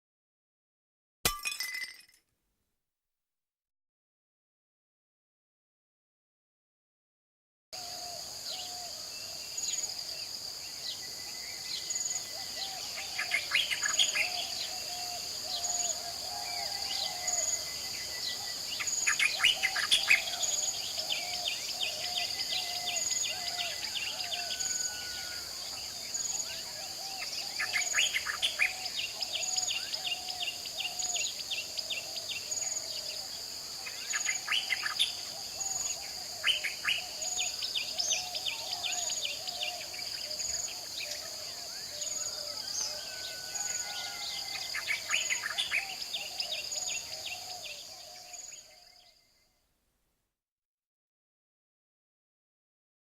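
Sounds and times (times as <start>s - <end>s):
bird calls and trills: 7.8s - 49.5s.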